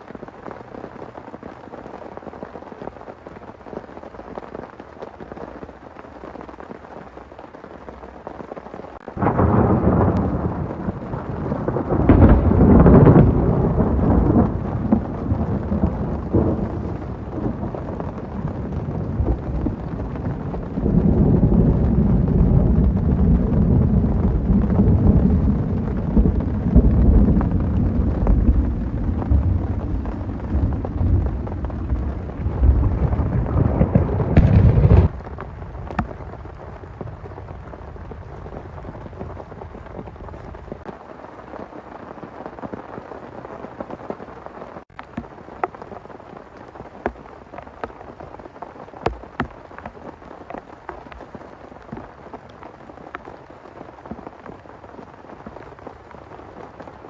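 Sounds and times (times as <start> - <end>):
heavy rain: 0.0 - 57.0
thunder rumbling: 9.2 - 40.9.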